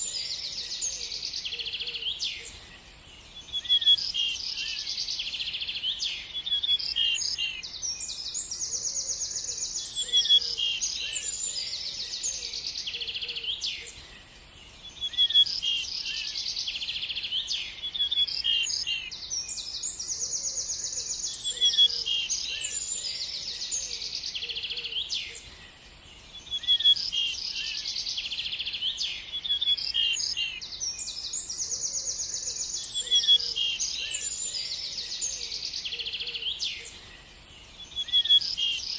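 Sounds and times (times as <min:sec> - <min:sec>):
small birds chirping and trilling: 0:00.0 - 0:38.9.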